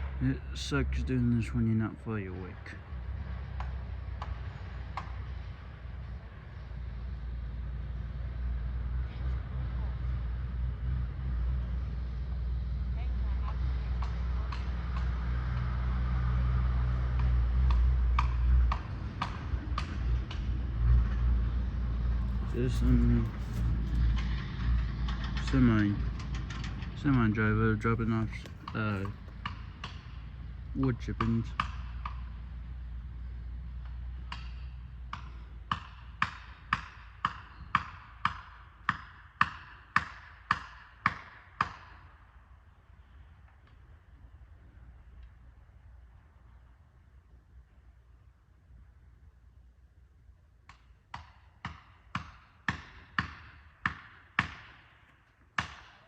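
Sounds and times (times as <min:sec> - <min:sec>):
low engine rumble: 0:00.0 - 0:37.7
sharp evenly spaced knocks: 0:22.2 - 0:30.4, 0:31.1 - 0:32.4, 0:33.8 - 0:42.1, 0:50.7 - 0:56.0.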